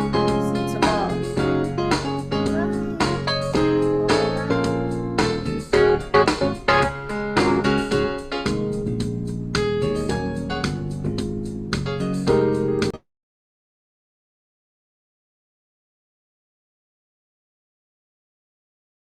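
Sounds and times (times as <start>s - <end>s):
keyboard music: 0.0s - 13.0s.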